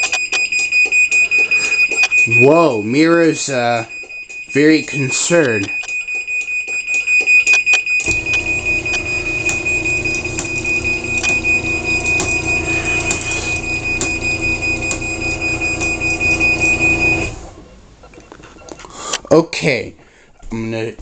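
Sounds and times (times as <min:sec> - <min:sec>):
high rapidly pulsing beep: 0:00.0 - 0:17.3
garage door opener motor running: 0:08.0 - 0:17.7.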